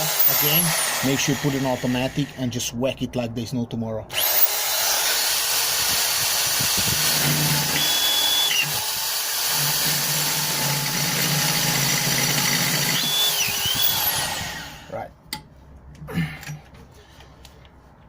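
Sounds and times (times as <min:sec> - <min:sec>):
drill bit squealing: 0:00.0 - 0:02.4, 0:06.2 - 0:14.8
electric drill boring through steel: 0:00.0 - 0:02.4, 0:04.1 - 0:14.9.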